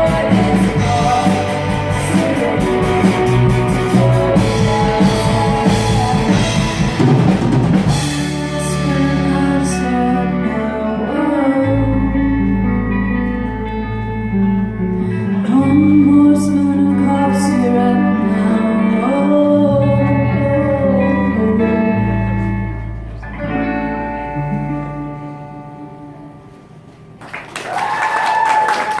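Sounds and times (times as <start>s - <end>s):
rock band playing: 0.0s - 25.5s
singer holding long notes: 0.0s - 26.5s
applause and cheering: 27.2s - 29.0s.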